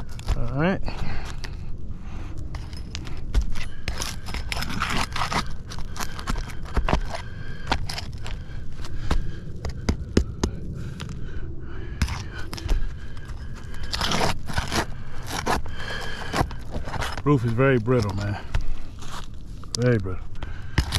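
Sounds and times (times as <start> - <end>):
roof shingles scraping and crackling: 3.0 - 8.9, 13.2 - 20.1.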